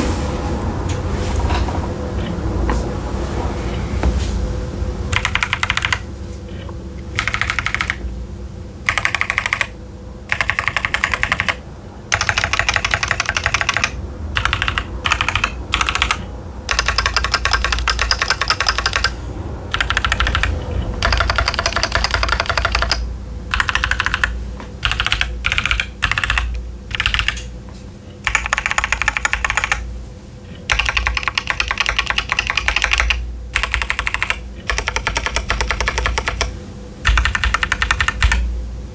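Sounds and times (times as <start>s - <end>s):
mechanical keyboard typing: 5.1s - 6.0s, 7.2s - 8.0s, 8.9s - 27.5s, 28.2s - 29.9s, 30.6s - 38.5s.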